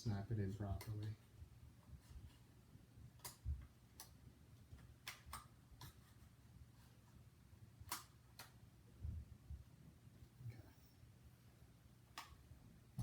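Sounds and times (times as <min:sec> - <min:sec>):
sharp plastic clicks: 0:00.7 - 0:01.2, 0:03.1 - 0:06.0, 0:07.8 - 0:08.6.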